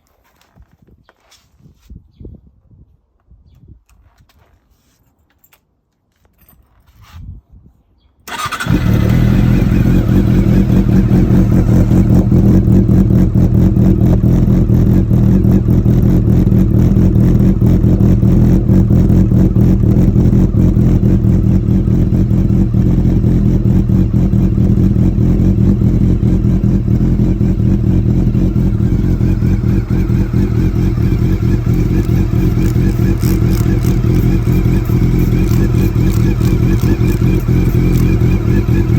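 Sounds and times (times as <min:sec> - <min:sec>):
motorcycle engine starting and idling: 0:08.3 - 0:38.9.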